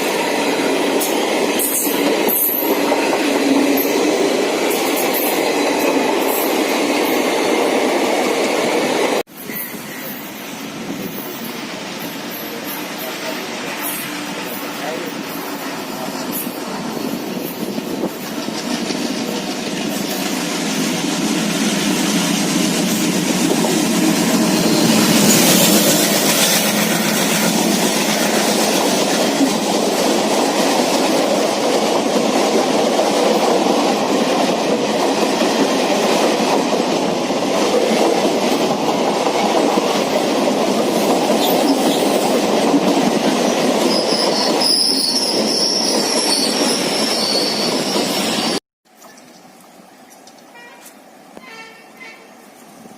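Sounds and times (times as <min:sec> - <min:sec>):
train wheels rolling on rails: 0:00.0 - 0:52.9
high wheel squeal: 0:43.8 - 0:48.6.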